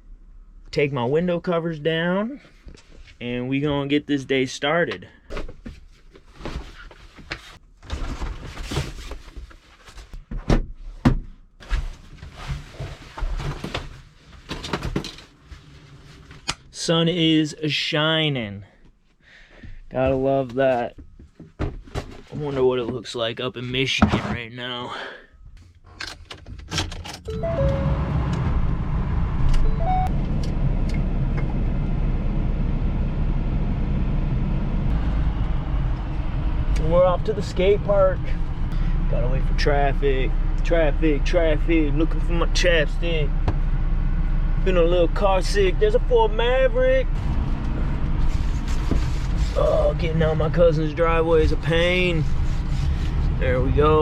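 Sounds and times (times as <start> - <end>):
vehicle engine starting and running: 26.8 - 54.0
two-note dashboard chime: 27.3 - 28.4, 29.6 - 30.2.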